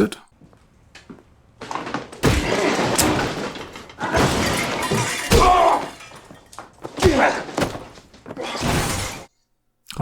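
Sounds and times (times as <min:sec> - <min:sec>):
heavy thuds and crashes: 0:01.6 - 0:09.3.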